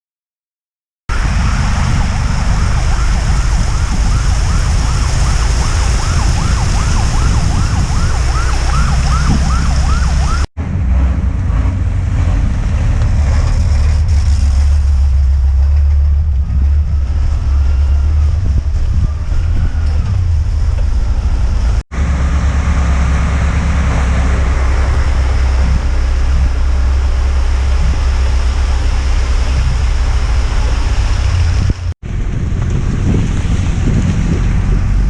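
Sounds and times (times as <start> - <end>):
siren wailing in fast sweeps: 1.1 - 10.5
heavy low rumble: 1.1 - 35.0.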